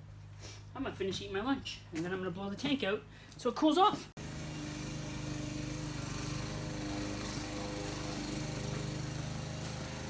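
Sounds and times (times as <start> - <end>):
small motor humming with pulse: 4.2 - 10.0.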